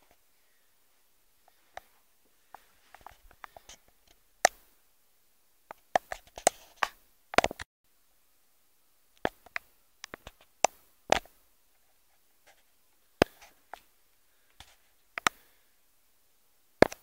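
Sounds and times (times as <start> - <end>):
sharp clicks and taps: 3.0 - 4.7, 5.7 - 7.7, 9.2 - 11.3, 14.6 - 15.4.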